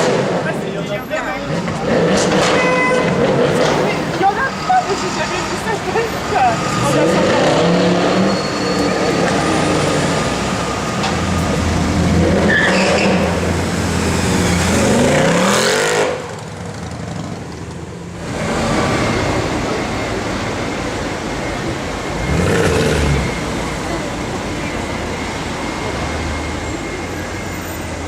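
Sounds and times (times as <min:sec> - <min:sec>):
traffic: 0:00.0 - 0:28.0
car exhaust under acceleration: 0:09.0 - 0:26.2.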